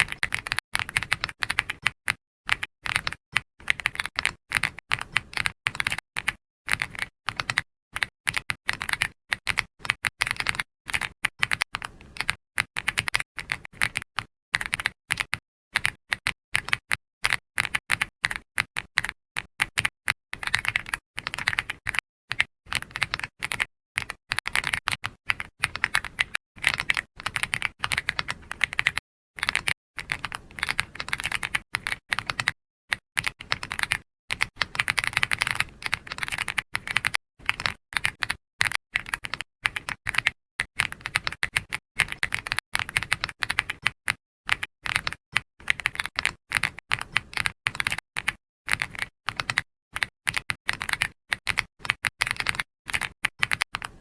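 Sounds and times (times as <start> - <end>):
keyboard typing clicks: 19.0 - 54.0.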